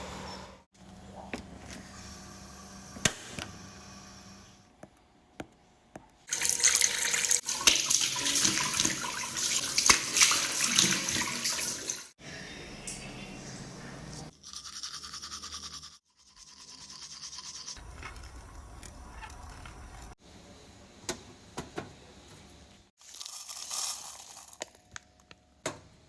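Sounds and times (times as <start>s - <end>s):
water running: 6.3s - 15.4s.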